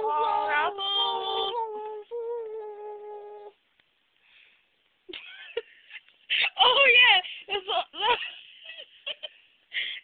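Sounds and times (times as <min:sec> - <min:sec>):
high-pitched silly singing: 0:00.0 - 0:03.6.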